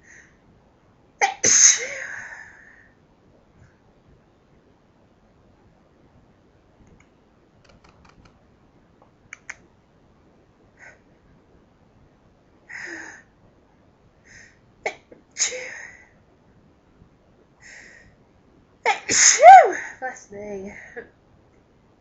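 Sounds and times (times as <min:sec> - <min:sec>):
person sneezing: 0:18.9 - 0:19.8.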